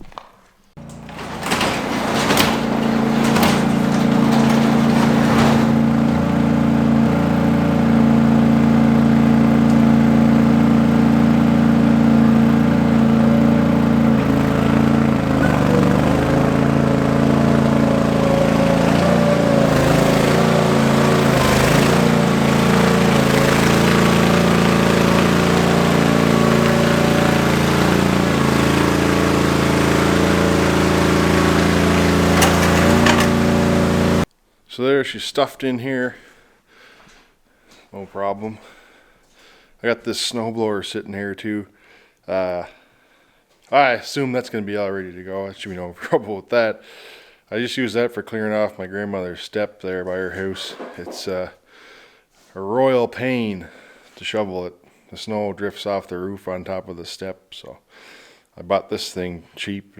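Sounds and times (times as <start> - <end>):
tractor engine running: 0.8 - 34.3.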